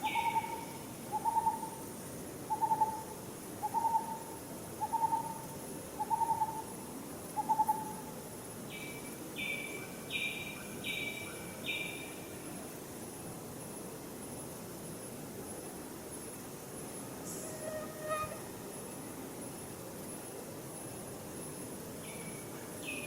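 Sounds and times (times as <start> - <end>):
bird hooting: 0.0 - 1.7, 17.4 - 18.4
higher-pitched bird call: 17.3 - 18.4.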